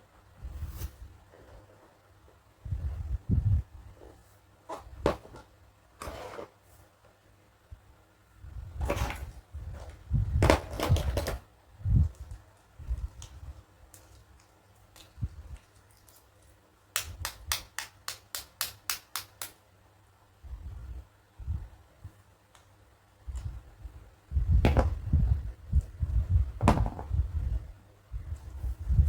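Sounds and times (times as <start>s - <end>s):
plastic rustling and knocking: 4.7s - 6.2s, 8.8s - 15.8s, 24.6s - 26.0s, 26.6s - 27.4s.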